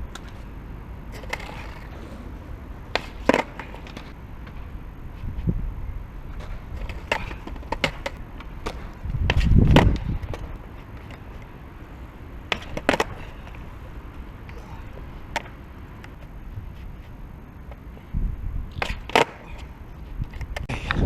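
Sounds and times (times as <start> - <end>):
skateboard wheels rolling on concrete: 0.0 - 21.0
skateboard clacking on ground: 1.1 - 4.7, 6.3 - 16.3, 18.7 - 21.0.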